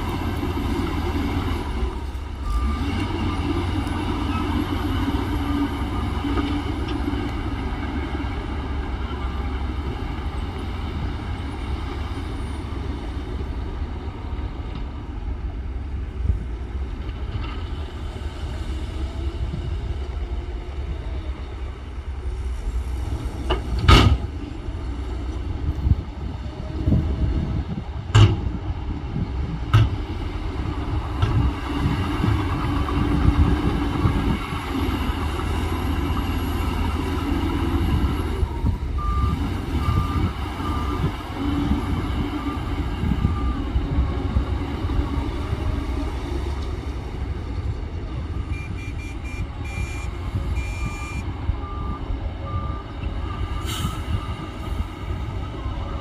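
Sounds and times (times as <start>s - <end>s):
heavy diesel machinery running: 0.0s - 56.0s.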